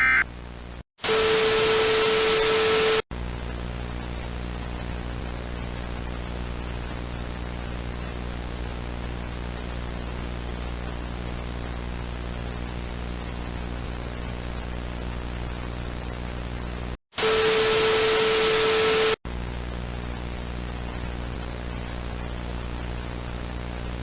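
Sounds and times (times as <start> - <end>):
static hiss: 0.0 - 0.2
loud static burst with steady tone: 0.0 - 3.7, 17.2 - 20.6.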